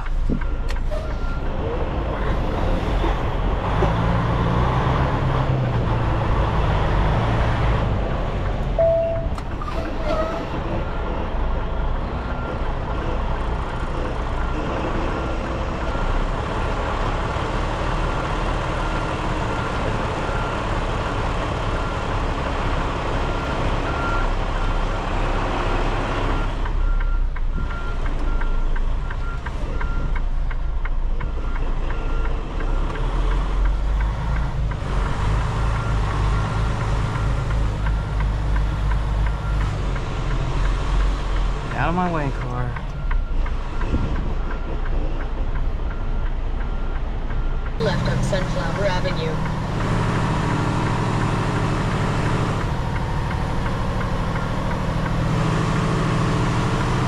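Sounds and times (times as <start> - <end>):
backup alarm beeping: 8.8 - 9.5.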